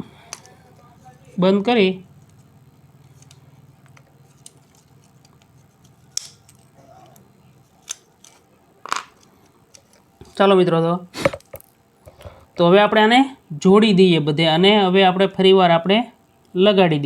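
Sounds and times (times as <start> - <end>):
faint low hum: 0.0 - 17.0
plastic parts clicking: 7.8 - 10.1.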